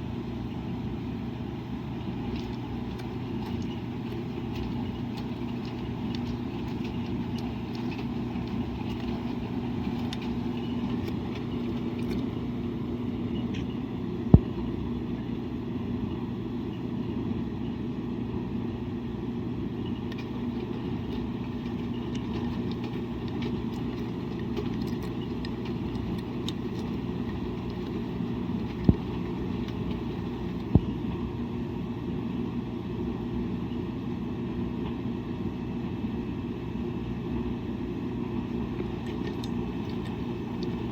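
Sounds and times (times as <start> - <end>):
washing machine motor hum: 0.0 - 40.9.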